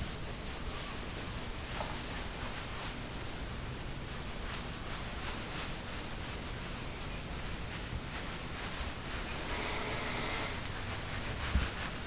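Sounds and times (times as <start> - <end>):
metal tool scraping over skin: 9.3 - 10.7.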